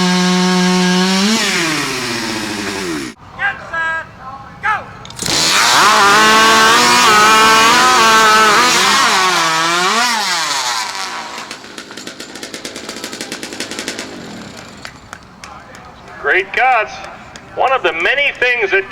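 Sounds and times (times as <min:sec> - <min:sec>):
chainsaw screaming at full throttle: 0:00.0 - 0:03.2, 0:05.2 - 0:14.9.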